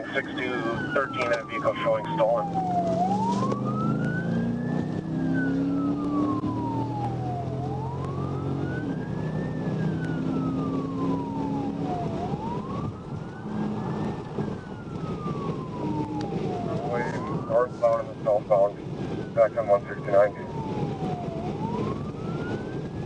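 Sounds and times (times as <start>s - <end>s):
car engine and road noise: 0.0s - 23.0s
police siren wailing: 0.0s - 23.0s.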